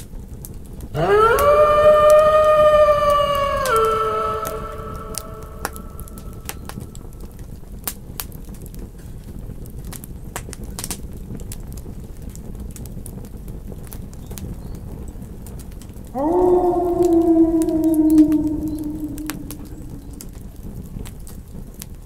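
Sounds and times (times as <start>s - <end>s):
campfire crackling: 0.0s - 22.0s
wolf howling: 1.0s - 7.1s, 16.2s - 20.4s.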